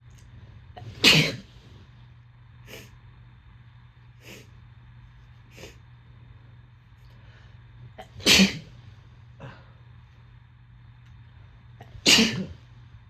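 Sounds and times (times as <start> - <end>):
person sneezing: 0.8 - 1.5, 8.0 - 8.8, 11.8 - 12.6.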